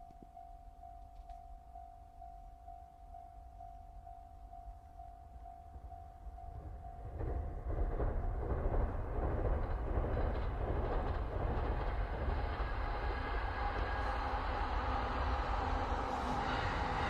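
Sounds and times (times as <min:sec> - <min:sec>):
train wheels rumbling on rails: 0:05.8 - 0:17.0.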